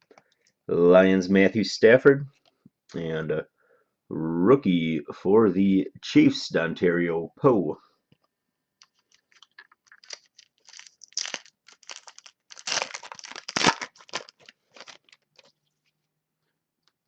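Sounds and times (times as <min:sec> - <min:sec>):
foil wrapper crinkling and tearing: 0:08.9 - 0:15.6.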